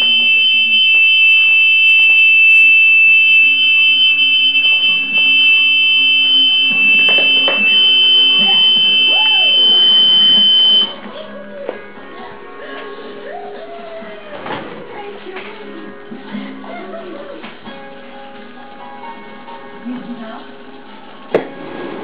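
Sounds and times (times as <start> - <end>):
high-pitched alarm buzzers: 0.0 - 10.9.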